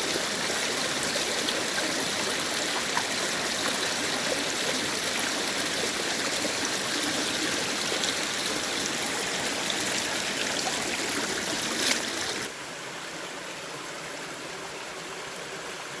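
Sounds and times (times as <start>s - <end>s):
running water: 0.0s - 12.5s.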